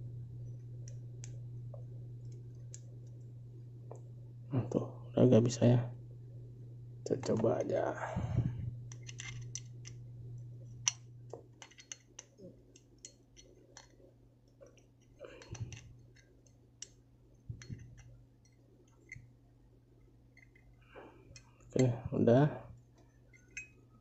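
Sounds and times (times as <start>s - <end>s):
metal clicks taps and scrapes: 0.5s - 3.2s, 8.9s - 10.0s, 10.6s - 19.3s, 20.3s - 21.9s, 22.9s - 23.8s.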